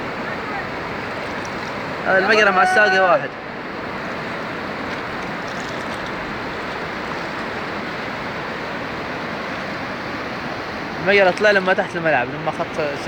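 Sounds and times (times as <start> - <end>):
storm runoff rushing in a channel: 0.0 - 13.0.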